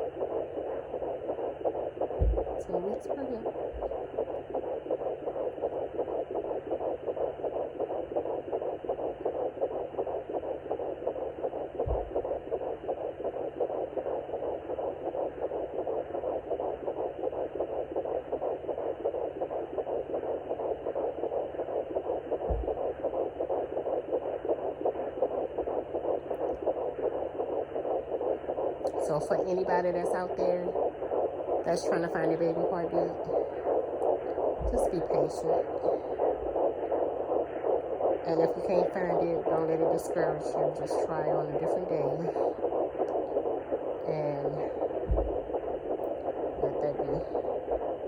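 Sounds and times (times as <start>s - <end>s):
fetal heartbeat whooshing pulse: 0.0s - 48.0s
low thumps: 0.0s - 48.0s.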